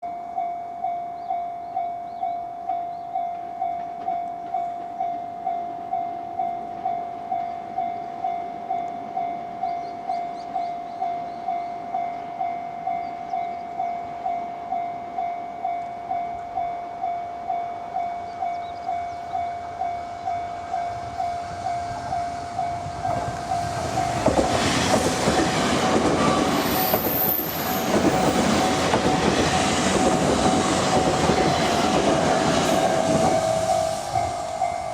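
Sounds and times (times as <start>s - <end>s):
electric train passing: 0.1s - 34.9s
level crossing bell ringing: 32.8s - 34.9s.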